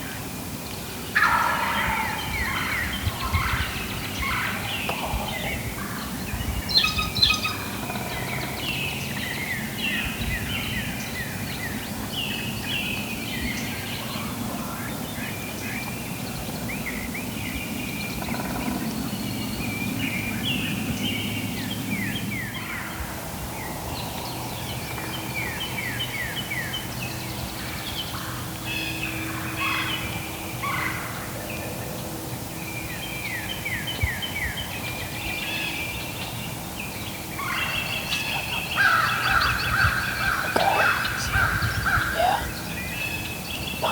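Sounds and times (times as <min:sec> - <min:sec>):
turkey gobbling: 0:01.2 - 0:02.7, 0:37.5 - 0:42.5.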